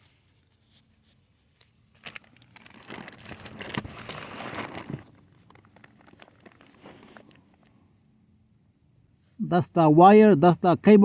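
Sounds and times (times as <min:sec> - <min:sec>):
cable rustling and scraping: 0:00.0 - 0:07.7.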